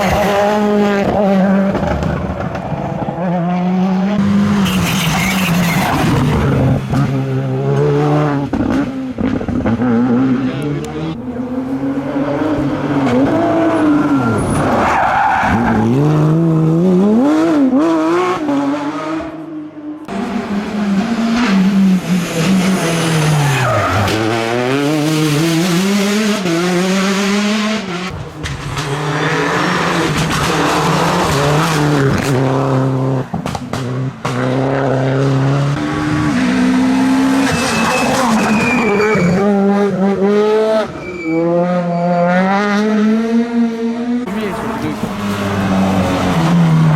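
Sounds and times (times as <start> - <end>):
rally car engines revving: 0.0 - 46.9
tyre squeal: 4.6 - 6.1, 37.3 - 39.6, 40.9 - 42.4.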